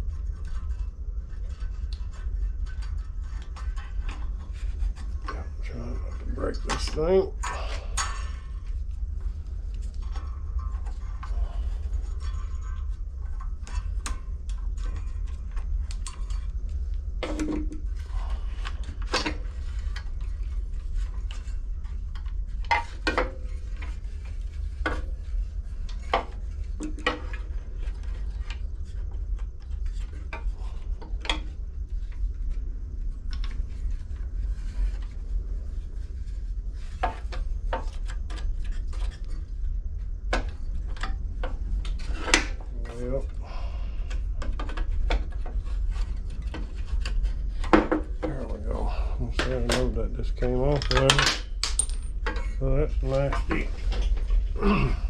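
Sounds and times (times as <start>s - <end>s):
steady low hum: 0.0s - 55.0s
metal tools clicking and clinking: 50.8s - 52.4s.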